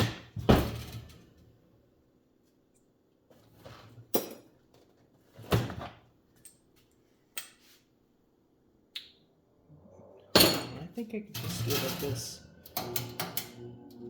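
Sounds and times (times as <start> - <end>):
metal grille clanking and rattling: 10.4 - 13.5.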